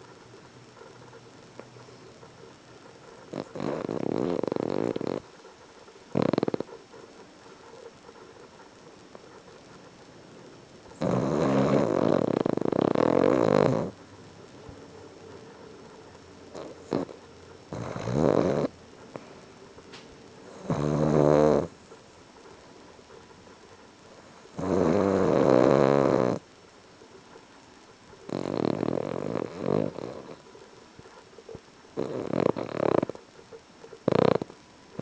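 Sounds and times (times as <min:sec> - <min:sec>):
pet snoring: 0:00.0 - 0:09.6, 0:10.9 - 0:14.0, 0:16.5 - 0:19.4, 0:20.4 - 0:21.8, 0:24.1 - 0:26.4, 0:28.3 - 0:33.2, 0:34.0 - 0:35.0.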